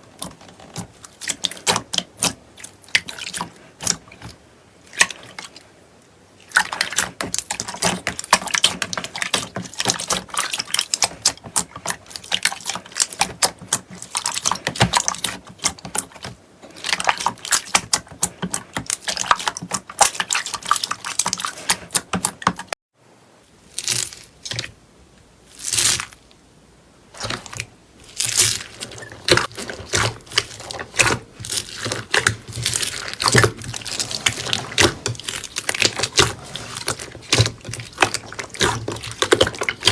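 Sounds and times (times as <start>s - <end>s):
slime squelching: 0.0s - 22.7s, 23.7s - 24.8s, 27.1s - 39.9s
slime crackling and popping: 27.2s - 39.9s.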